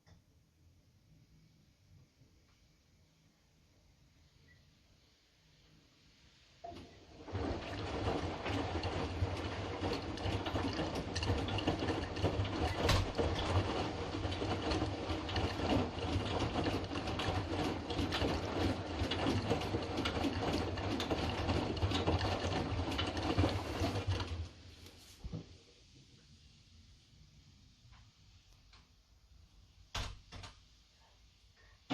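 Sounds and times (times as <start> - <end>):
click: 0.0 - 0.3, 27.9 - 28.9
washing machine drum turning: 6.6 - 24.6.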